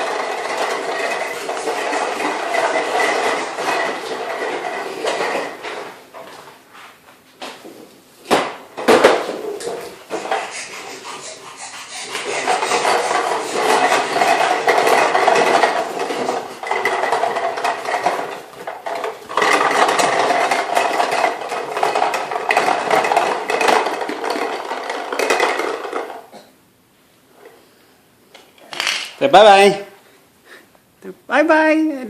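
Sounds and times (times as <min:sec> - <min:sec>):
push lawnmower rattling: 0:00.0 - 0:05.9, 0:12.0 - 0:26.2.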